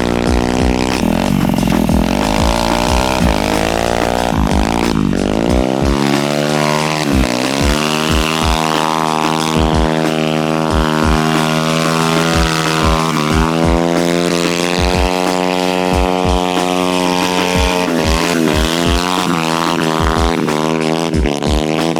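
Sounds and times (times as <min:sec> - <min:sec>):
short low thumps: 0:00.0 - 0:08.7
electric kart motor running: 0:00.0 - 0:21.9.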